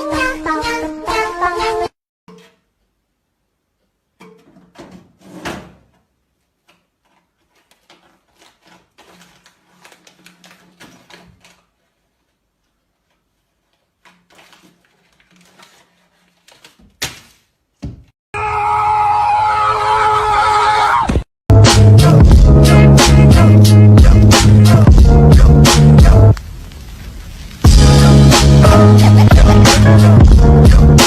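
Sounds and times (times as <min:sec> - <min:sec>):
loud music: 0:21.5 - 0:26.3, 0:27.7 - 0:31.0.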